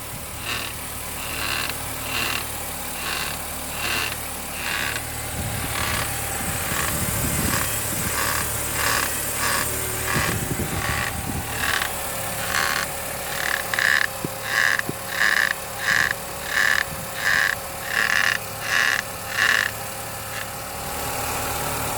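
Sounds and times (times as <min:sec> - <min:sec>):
car suspension creaking: 0:00.0 - 0:20.6
low mechanical hum: 0:00.0 - 0:21.9.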